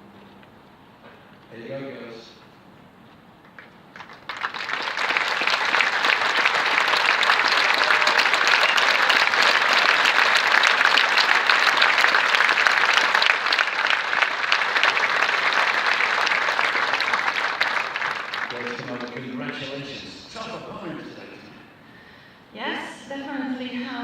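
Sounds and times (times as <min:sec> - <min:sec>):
crowd applauding: 0:03.4 - 0:20.6.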